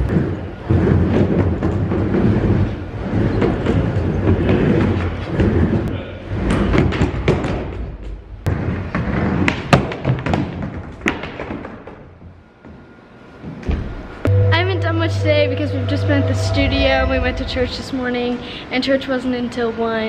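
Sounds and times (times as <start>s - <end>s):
skateboard clacks and thumps: 0.0s - 12.2s
skateboard rolling on hard floor: 0.1s - 12.2s.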